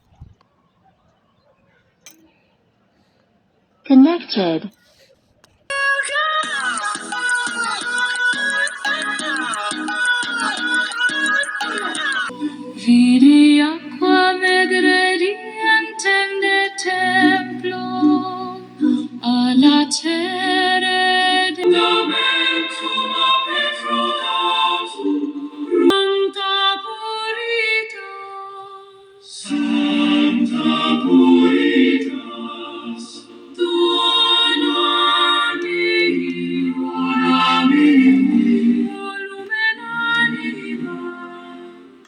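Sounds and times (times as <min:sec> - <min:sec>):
song with singing on a small speaker: 0:05.7 - 0:42.0.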